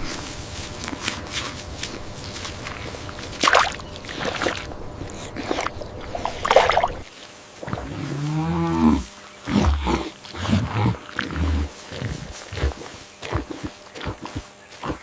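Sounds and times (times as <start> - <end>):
rustling: 0.0 - 5.4
scuffling noises: 0.0 - 15.0
cow mooing: 7.8 - 11.8.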